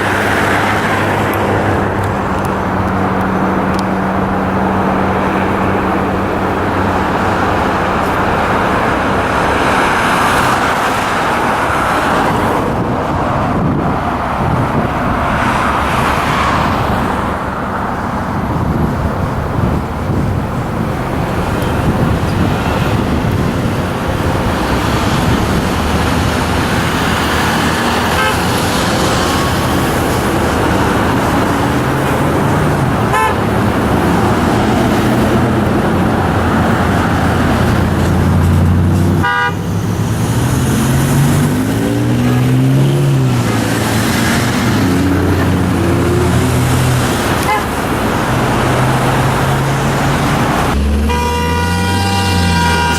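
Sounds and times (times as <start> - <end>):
heavy freeway traffic roar: 0.0 - 52.9
vehicle horns honking: 26.6 - 30.2, 33.0 - 33.8, 39.2 - 39.9, 47.2 - 48.0, 50.7 - 52.9.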